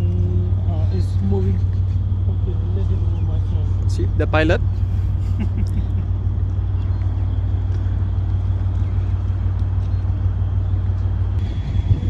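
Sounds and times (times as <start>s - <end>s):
engine droning: 0.0s - 12.0s.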